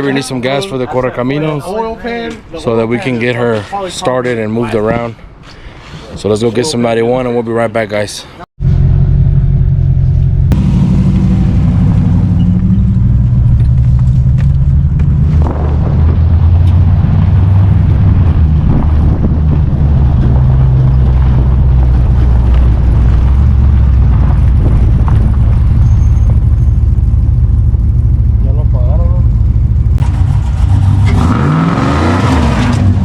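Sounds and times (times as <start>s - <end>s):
vehicle engine droning: 8.6s - 33.0s.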